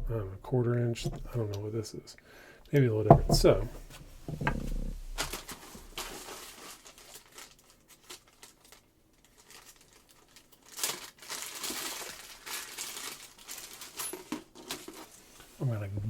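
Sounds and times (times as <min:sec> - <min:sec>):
packaging crinkling and rustling: 0:03.8 - 0:15.6.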